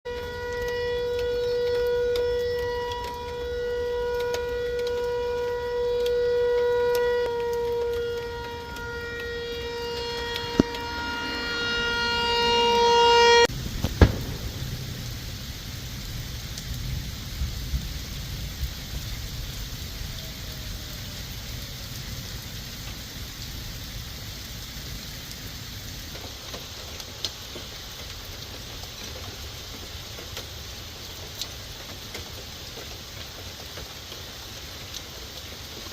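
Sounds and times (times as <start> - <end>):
water drips: 0.1 - 12.0
rain falling: 0.1 - 35.9
tornado warning siren: 0.1 - 35.9
sharp loud pop: 13.8 - 15.3.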